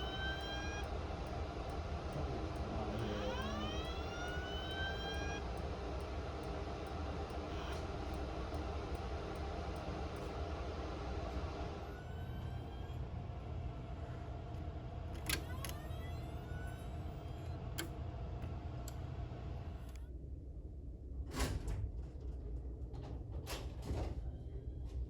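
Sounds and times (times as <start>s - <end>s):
distant fire alarm tone: 0.0s - 0.9s, 3.0s - 5.6s
low steady rumble: 0.0s - 25.0s.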